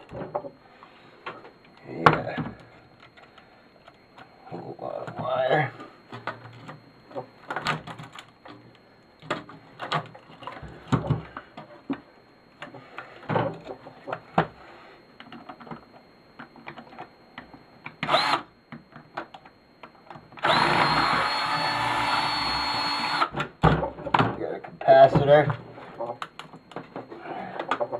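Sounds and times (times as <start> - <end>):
clicks of wires being handled: 6.1 - 14.6, 15.2 - 18.1, 26.2 - 27.9
power drill running: 18.0 - 18.4, 20.4 - 23.3.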